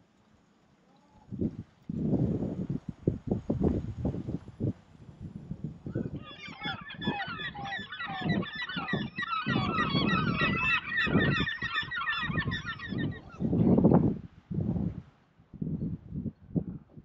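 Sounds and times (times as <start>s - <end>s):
flock of birds honking: 6.2s - 13.8s.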